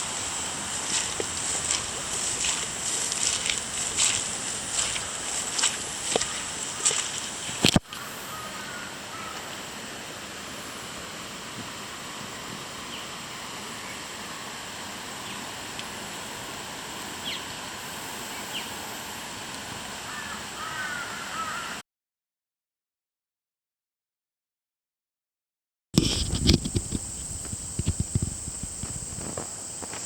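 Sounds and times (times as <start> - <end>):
bird calling: 0.0 - 9.7, 17.0 - 19.0, 20.0 - 21.8
steady hiss: 0.0 - 21.8, 26.0 - 30.0
faint bird chirps: 6.1 - 9.4.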